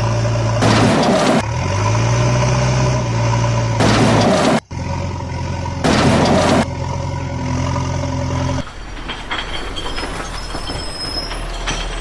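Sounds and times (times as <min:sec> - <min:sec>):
heavy engine running: 0:00.0 - 0:12.0
faint high squeals: 0:08.6 - 0:12.0.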